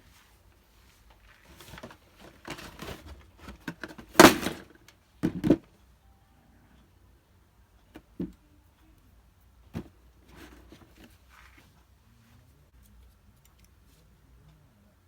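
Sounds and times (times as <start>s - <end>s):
cardboard and plastic rustling: 0.0s - 5.6s, 9.8s - 11.7s.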